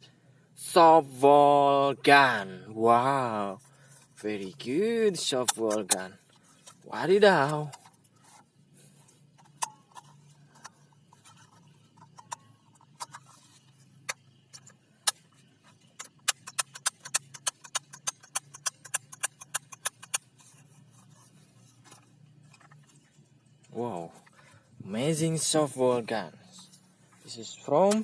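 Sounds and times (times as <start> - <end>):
faint low hum: 0.0 - 28.0
toy gun plastic clicks: 16.0 - 20.3.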